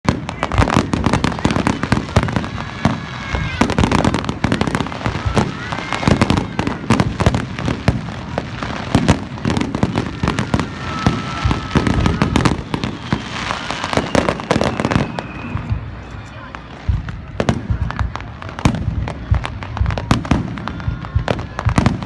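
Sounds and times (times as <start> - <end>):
fireworks bangs and crackles: 0.0 - 22.0.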